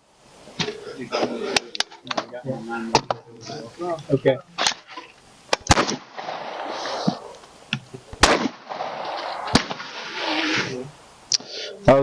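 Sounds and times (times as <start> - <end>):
steady rushing noise: 0.0 - 12.0
gunshots: 5.5 - 10.9.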